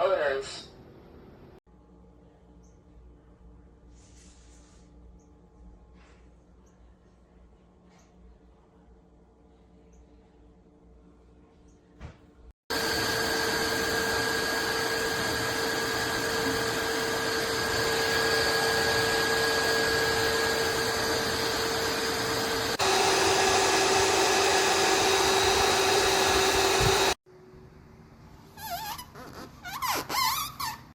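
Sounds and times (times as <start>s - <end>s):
vacuum suction motor whining: 12.7s - 27.2s.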